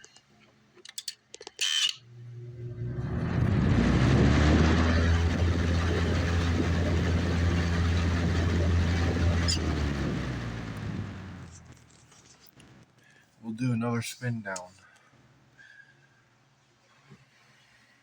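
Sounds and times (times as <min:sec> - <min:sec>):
fan motor hum: 0:02.0 - 0:11.9
fan air rushing: 0:02.1 - 0:11.7.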